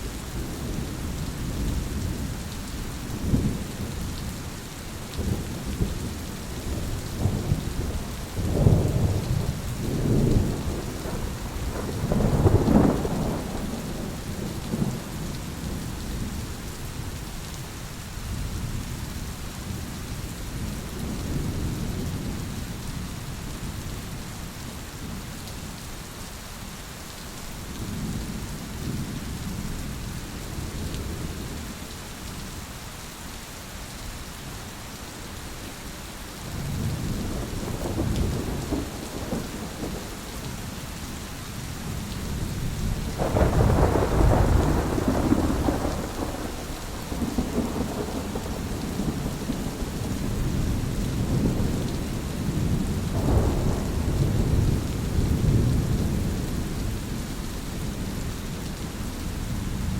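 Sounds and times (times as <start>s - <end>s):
steady rain: 0.0s - 59.9s
rolling thunder: 5.2s - 16.4s, 36.6s - 40.6s, 42.0s - 57.2s.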